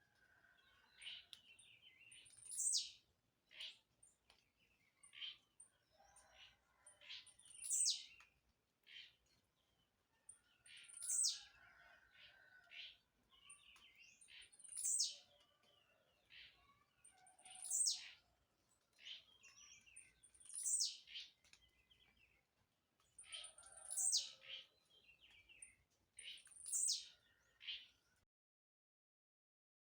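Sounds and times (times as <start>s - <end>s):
soft bird chirps: 19.0s - 22.3s.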